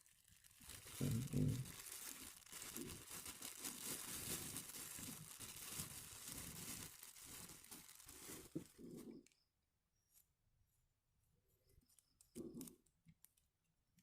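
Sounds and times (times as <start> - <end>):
packaging crinkling and rustling: 0.0 - 9.4.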